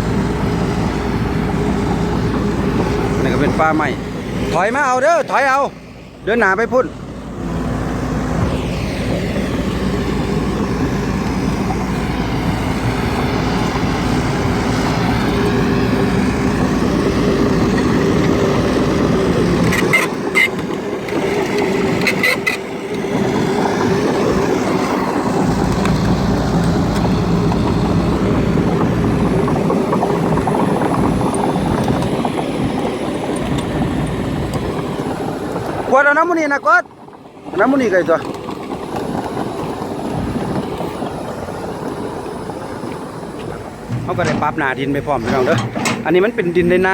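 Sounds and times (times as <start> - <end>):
heavy diesel engine running: 0.0 - 46.9.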